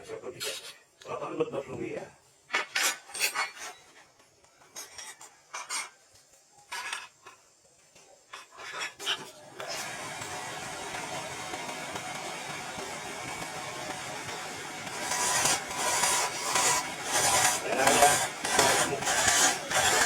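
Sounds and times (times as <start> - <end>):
hand tool scraping wood: 14.8 - 20.0.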